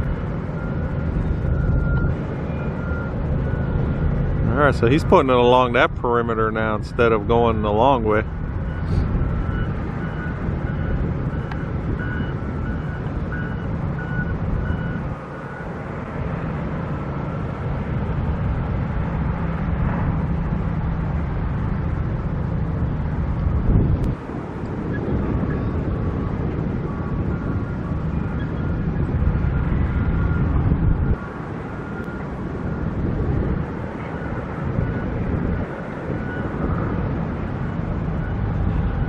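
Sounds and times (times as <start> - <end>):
backup alarm beeping: 0.0 - 3.8, 8.6 - 15.7
diesel machinery engines running: 0.0 - 39.0.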